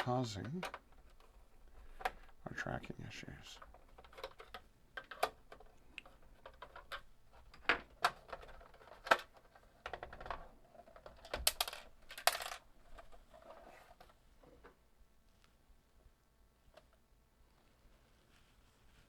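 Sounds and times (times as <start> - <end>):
handling clicks and metallic clinks: 3.6 - 13.5.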